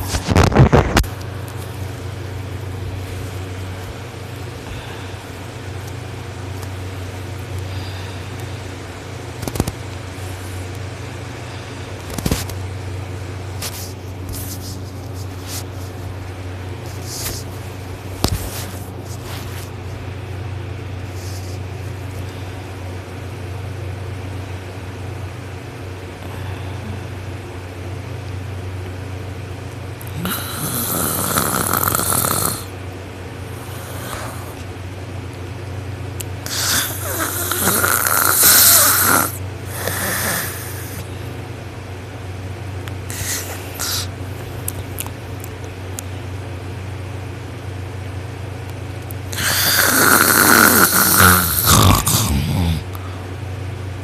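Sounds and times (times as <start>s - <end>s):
steady low hum: 0.0s - 54.0s
person snoring loudly: 30.1s - 32.7s, 33.6s - 34.6s, 36.4s - 41.1s, 43.1s - 44.1s, 49.3s - 53.1s.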